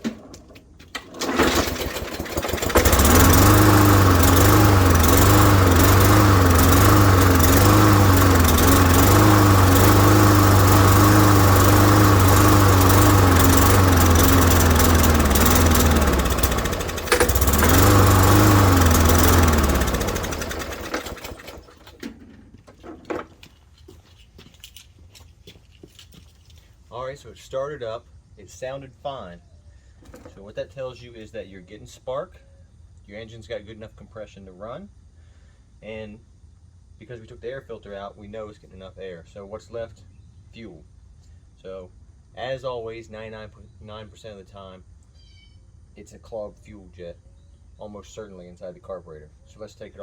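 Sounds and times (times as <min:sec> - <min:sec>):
lawn mower engine running: 0:00.0 - 0:23.4.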